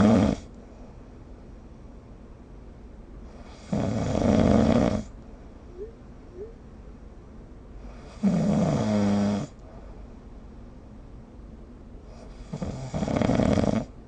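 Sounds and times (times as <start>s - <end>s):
short rising whistle: 5.8s - 6.6s.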